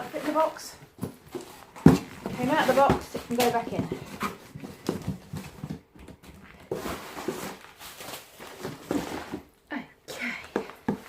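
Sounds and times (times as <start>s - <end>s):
fabric rustling into cardboard box: 6.6s - 9.5s.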